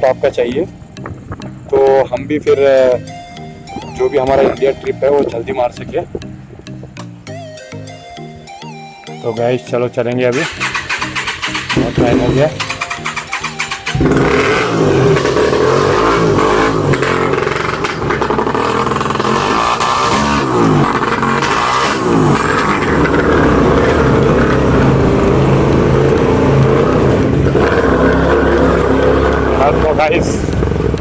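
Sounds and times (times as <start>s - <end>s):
motorcycle engine revving: 10.3s - 31.0s.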